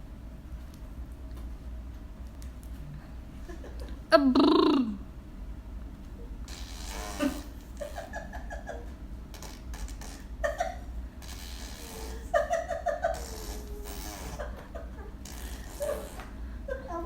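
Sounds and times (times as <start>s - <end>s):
baby making brrr sounds: 4.1s - 5.0s, 13.4s - 14.4s.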